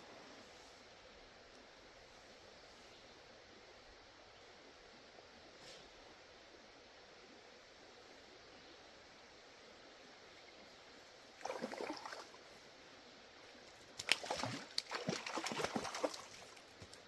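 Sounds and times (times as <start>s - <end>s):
water splashing: 11.4s - 12.4s, 14.0s - 16.7s.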